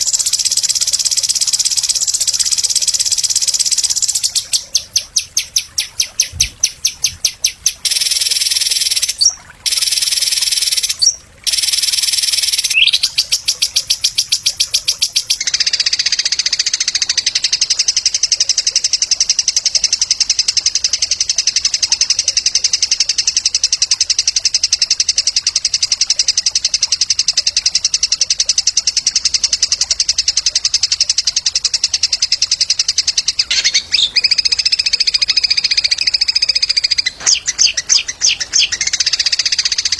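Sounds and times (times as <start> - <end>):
songbird chirping: 0.0 - 17.5, 31.9 - 39.9
fast buzzy bird trill: 0.0 - 39.9.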